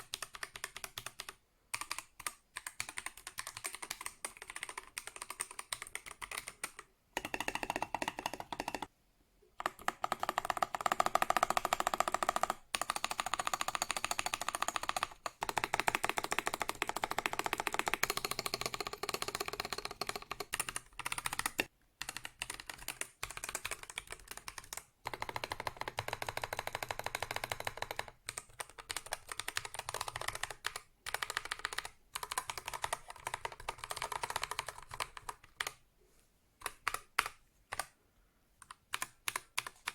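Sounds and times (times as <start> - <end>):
mechanical keyboard typing: 0.0 - 8.9, 9.6 - 35.8, 36.6 - 37.9, 38.6 - 39.9.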